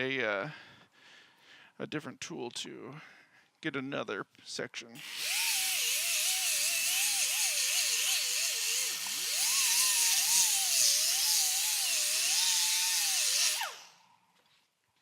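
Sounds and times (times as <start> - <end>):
grinder sanding wood: 5.0 - 13.9.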